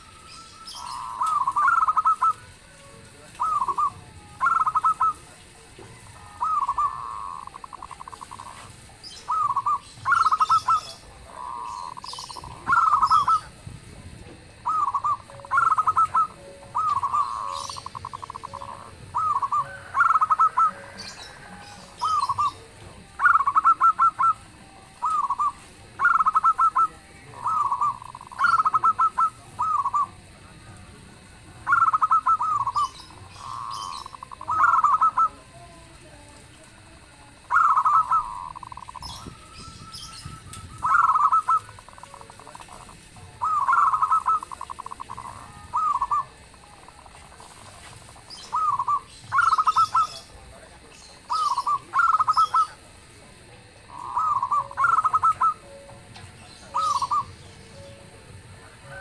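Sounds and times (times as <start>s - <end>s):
dove cooing: 0.0s - 36.0s, 36.9s - 59.0s.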